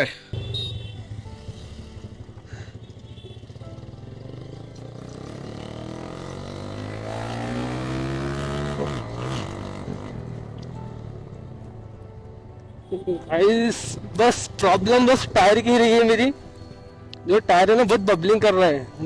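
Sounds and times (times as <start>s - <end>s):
motorcycle engine accelerating: 0.4s - 11.5s.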